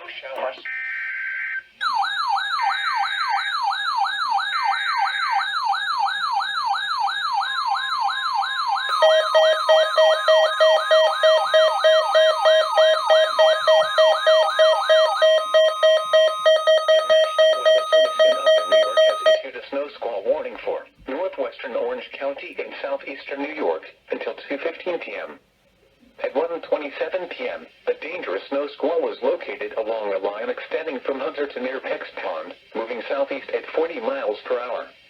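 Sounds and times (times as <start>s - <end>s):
electronic siren sweeping: 7.6s - 19.4s
fast pulsing beep: 8.9s - 19.4s
screeching digital alert data: 8.9s - 19.4s.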